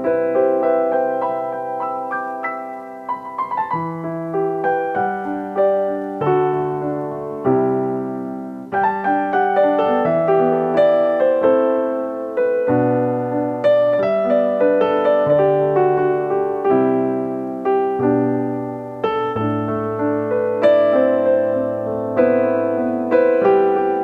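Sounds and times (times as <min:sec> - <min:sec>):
slow solo piano music: 0:00.0 - 0:24.0.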